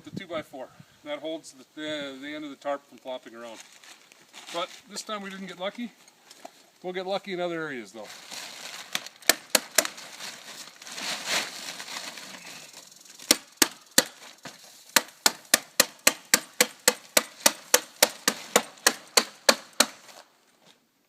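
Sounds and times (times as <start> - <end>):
tarp rustling: 3.4 - 6.7, 7.9 - 15.0
stapler strikes: 9.2 - 9.9, 15.0 - 20.0.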